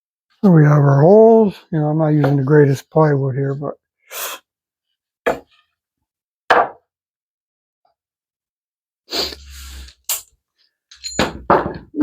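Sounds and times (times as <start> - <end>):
knocks of tools set down: 10.9 - 12.0.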